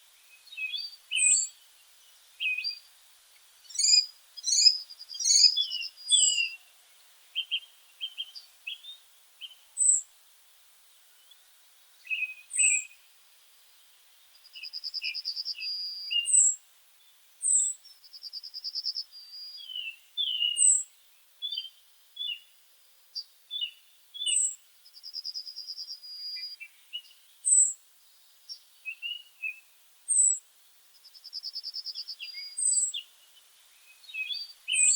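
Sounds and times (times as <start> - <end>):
songbirds chirping: 0.0 - 34.9.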